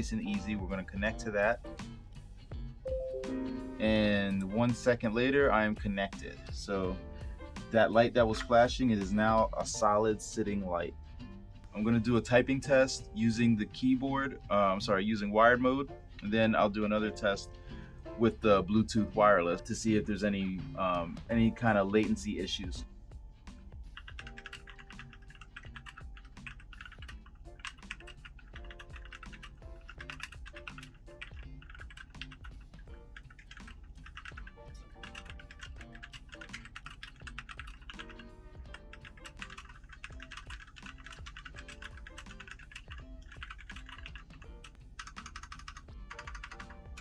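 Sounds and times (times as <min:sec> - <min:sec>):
background music: 0:00.0 - 0:47.0
fast mechanical keyboard typing: 0:24.0 - 0:32.6, 0:33.2 - 0:47.0.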